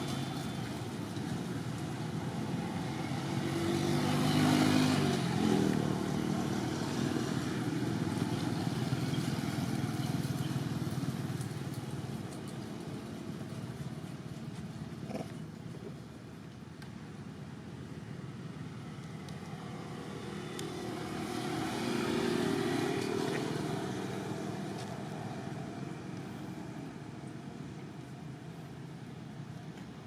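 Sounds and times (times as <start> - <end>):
vehicle engine passing by: 2.2 - 11.7, 18.8 - 27.8.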